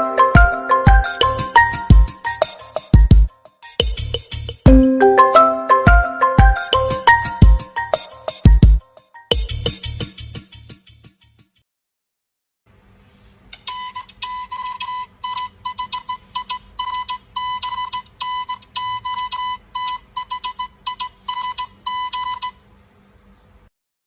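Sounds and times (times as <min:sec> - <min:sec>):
phone ringtone electronic beeps: 0:13.7 - 0:22.6.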